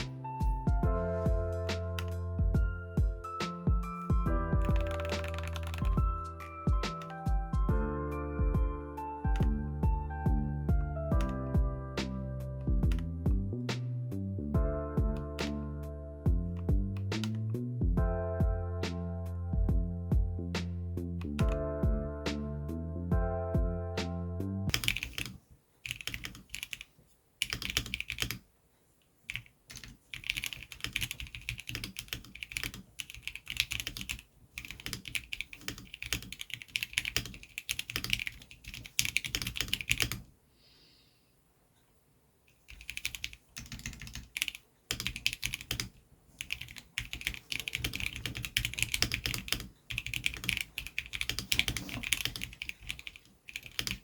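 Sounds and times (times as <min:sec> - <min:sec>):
mechanical keyboard typing: 0:01.7 - 0:02.2, 0:04.6 - 0:07.4, 0:11.1 - 0:11.5, 0:12.8 - 0:13.1, 0:15.1 - 0:15.6, 0:21.2 - 0:21.6, 0:24.7 - 0:28.4, 0:29.3 - 0:40.2, 0:42.6 - 0:54.0.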